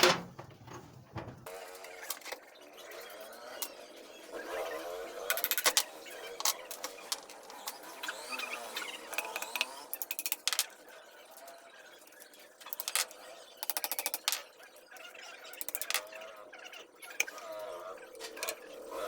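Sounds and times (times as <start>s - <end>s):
squeaky metal scraping: 0.0s - 1.5s.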